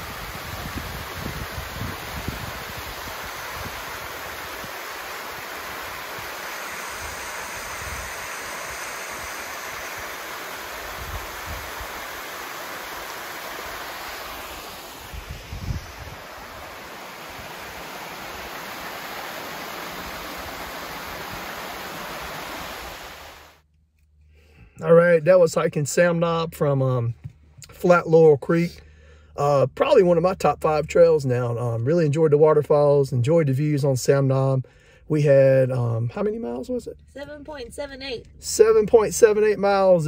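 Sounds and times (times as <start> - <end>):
wind gusts buffeting microphone: 0.0 - 4.8, 15.0 - 19.0
wind rushing: 0.0 - 12.2, 12.9 - 23.5.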